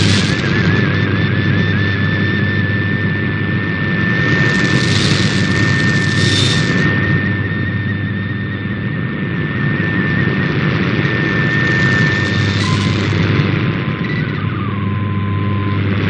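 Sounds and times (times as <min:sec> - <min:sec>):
radio static: 0:00.0 - 0:01.0, 0:04.2 - 0:06.9, 0:11.3 - 0:14.0
steady whistling radio tone: 0:00.0 - 0:01.1, 0:04.2 - 0:08.7, 0:11.1 - 0:15.9.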